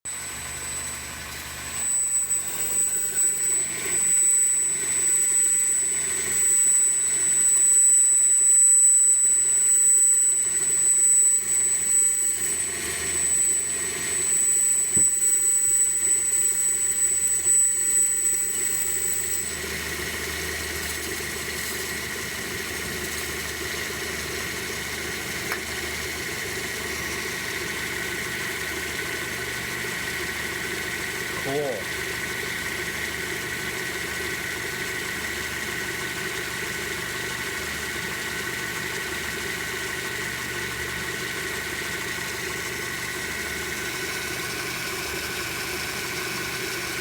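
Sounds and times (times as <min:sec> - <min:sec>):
compressor clutch squealing: 0:00.1 - 0:47.0
car engine idling: 0:22.1 - 0:47.0.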